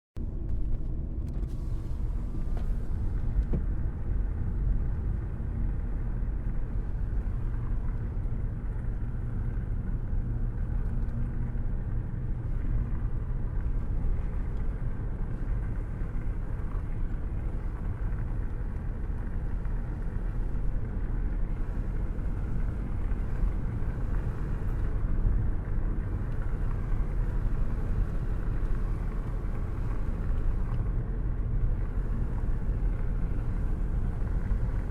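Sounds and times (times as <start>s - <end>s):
road and engine rumble: 0.2s - 34.9s.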